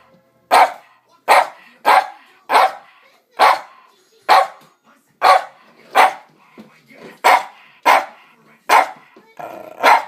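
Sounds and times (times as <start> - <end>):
dog barking: 0.5 - 6.3, 7.2 - 9.0, 9.7 - 10.0.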